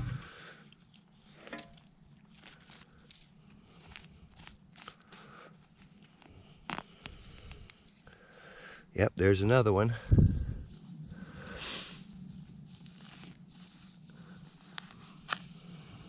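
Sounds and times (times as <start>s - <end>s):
soil and roots crunching: 0.0s - 7.2s.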